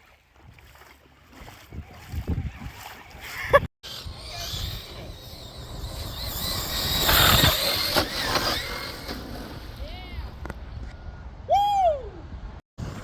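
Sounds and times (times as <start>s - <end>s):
water splashing: 0.0s - 3.6s
electric motor whining: 3.8s - 9.8s.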